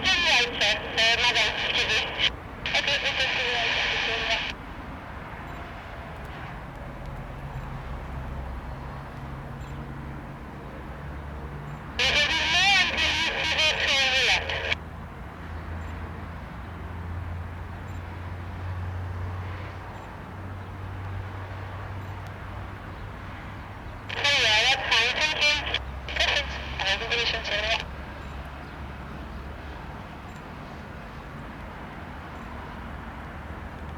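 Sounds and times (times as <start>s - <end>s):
distorted voice through radio speaker: 0.0s - 4.6s, 12.0s - 14.8s, 24.1s - 27.9s
distant aircraft engines droning: 0.0s - 5.6s, 6.2s - 14.8s, 21.8s - 33.9s.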